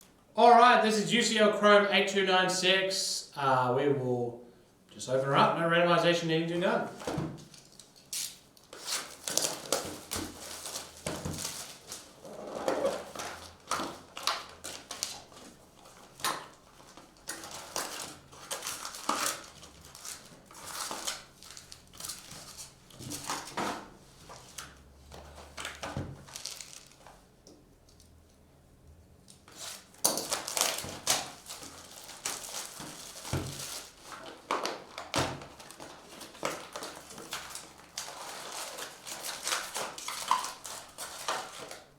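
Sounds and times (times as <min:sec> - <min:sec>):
rustling of wrappers and cardboard: 0:06.9 - 0:27.4, 0:29.4 - 0:41.9.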